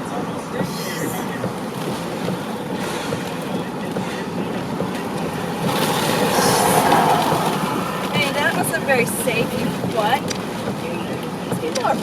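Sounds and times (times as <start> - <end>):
car road noise: 0.0 - 12.0
wind rushing through car window: 0.0 - 12.0.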